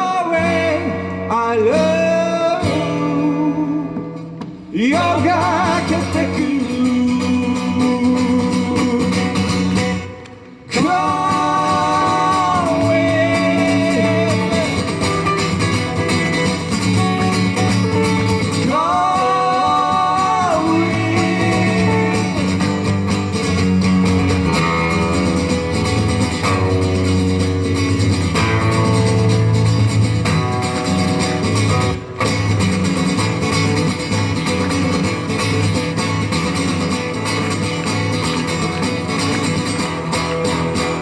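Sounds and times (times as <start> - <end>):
live band playing: 12.8 - 41.0
person singing long notes: 18.6 - 22.7.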